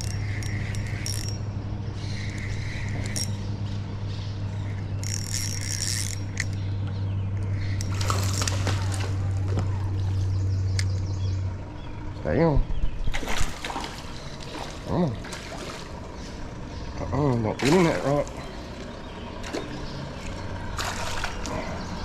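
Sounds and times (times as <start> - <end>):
fishing reel clicking: 0.0 - 1.4, 2.2 - 3.4, 5.0 - 6.7
steady low hum: 0.0 - 22.0.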